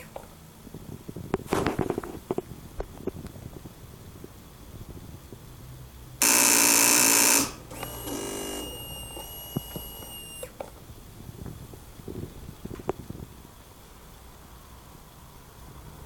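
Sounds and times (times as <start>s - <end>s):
steady high whine: 6.2s - 11.4s.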